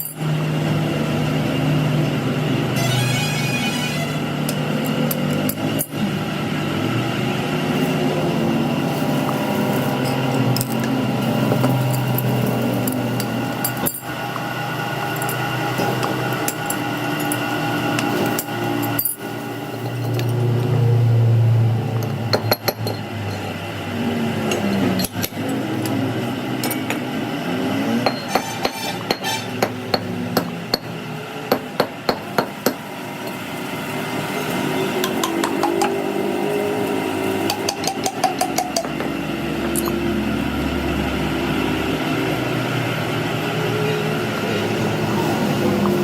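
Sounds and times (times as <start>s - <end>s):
workshop background noise: 0.0s - 46.0s
hammer striking metal: 28.0s - 30.9s, 37.5s - 40.1s.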